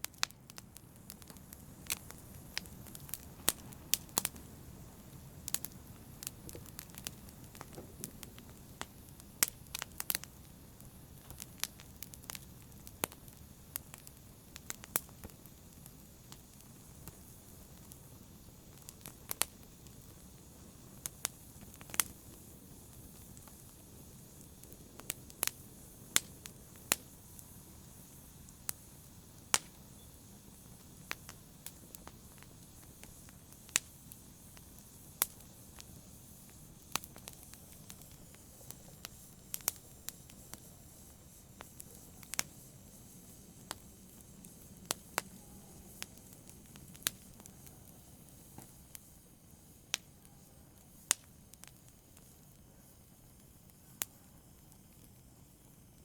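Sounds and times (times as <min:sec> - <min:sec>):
wood fire pops and snaps: 0:00.0 - 0:49.1, 0:49.9 - 0:52.4
low rush of flames: 0:00.0 - 0:56.0.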